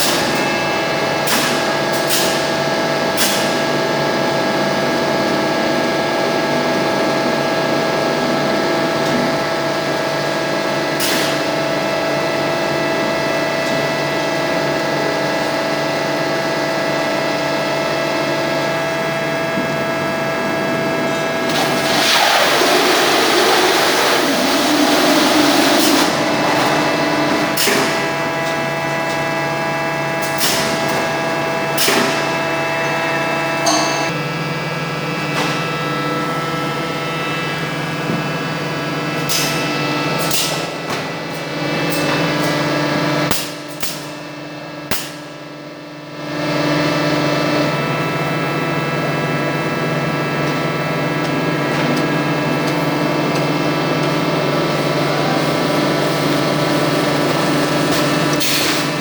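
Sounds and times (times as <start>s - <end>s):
lathe machine hum: 15.6s - 30.2s, 47.7s - 59.0s.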